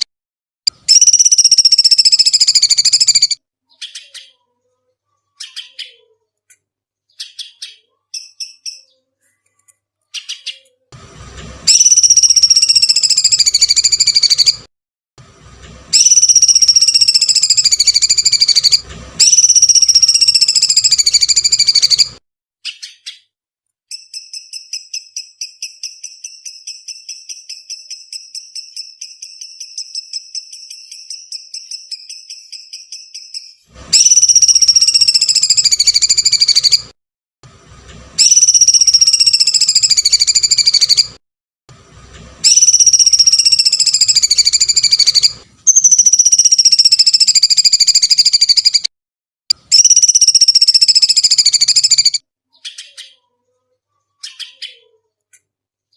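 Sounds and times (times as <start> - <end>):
bird trill: 0.7 - 6.2, 7.1 - 9.1, 10.1 - 10.8, 11.7 - 14.7, 15.9 - 23.3, 23.9 - 36.9, 38.2 - 41.2, 42.4 - 48.9, 49.6 - 55.0
shrill falling bird calls: 15.9 - 23.3, 23.9 - 36.9, 42.4 - 48.9.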